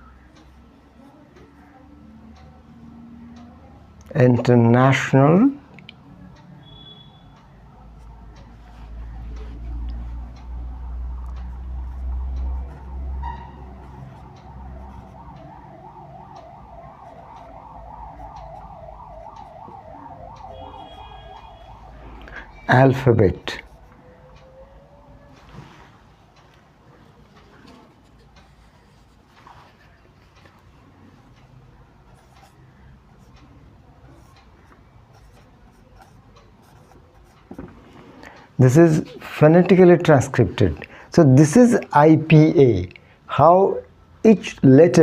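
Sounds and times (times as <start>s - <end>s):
siren warbling: 10.7s - 23.0s.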